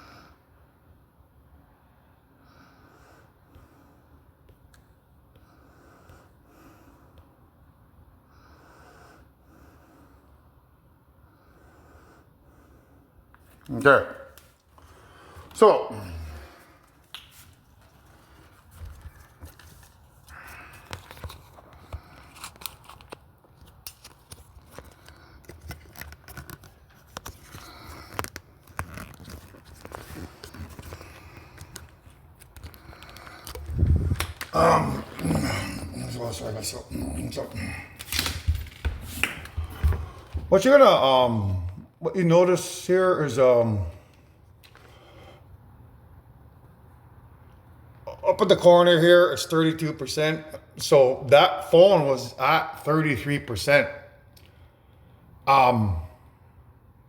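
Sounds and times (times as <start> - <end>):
person breathing: 14.8 - 17.0, 30.0 - 40.6, 44.8 - 45.6.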